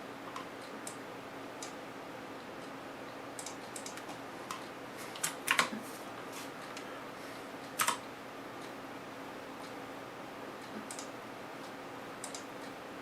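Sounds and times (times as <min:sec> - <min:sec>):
faint steady hum: 0:00.0 - 0:13.0
keyboard and mouse clicks: 0:03.4 - 0:05.8, 0:07.8 - 0:08.0, 0:10.7 - 0:11.1, 0:12.2 - 0:12.5.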